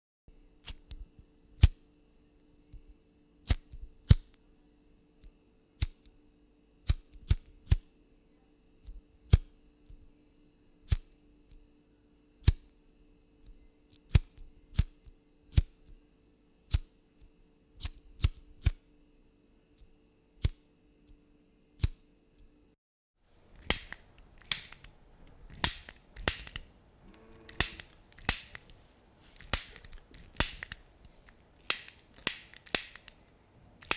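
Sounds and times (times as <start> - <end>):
lighter clicking: 23.5 - 26.7, 27.4 - 28.8, 29.4 - 33.2.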